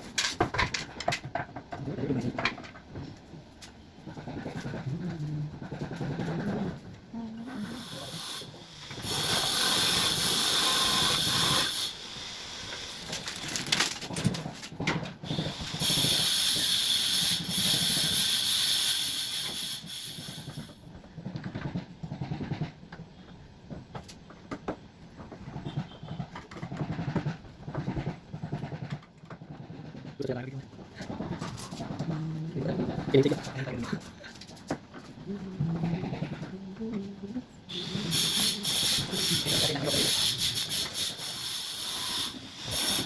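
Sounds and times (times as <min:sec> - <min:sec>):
loud hissing: 0:07.4 - 0:13.5, 0:15.3 - 0:20.8, 0:37.7 - 0:43.0.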